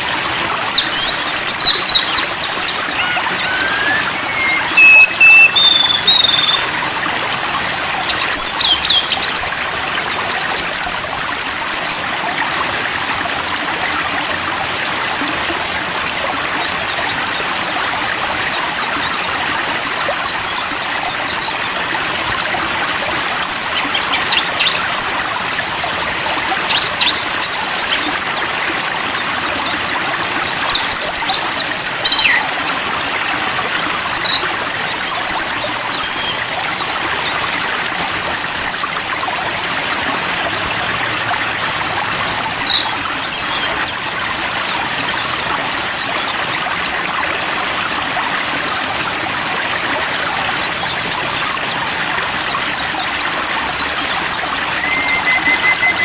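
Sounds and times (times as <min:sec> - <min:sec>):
running water: 0:00.0 - 0:56.0
bird chirps and trills: 0:00.6 - 0:06.9, 0:07.9 - 0:12.0, 0:18.2 - 0:21.8, 0:23.3 - 0:25.4, 0:26.5 - 0:32.5, 0:33.8 - 0:37.5, 0:38.2 - 0:39.2, 0:42.1 - 0:47.1, 0:50.6 - 0:56.0.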